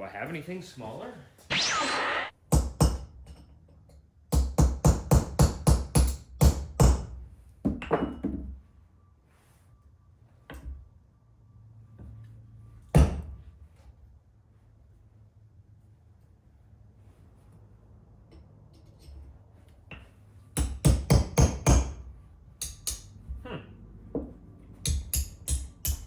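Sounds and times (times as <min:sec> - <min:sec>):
hammer striking metal punch: 0:24.8 - 0:26.0.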